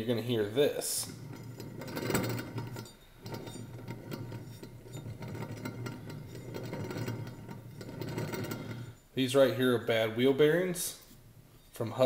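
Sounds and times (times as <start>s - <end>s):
wheel bearing grinding clicks: 1.0s - 9.0s.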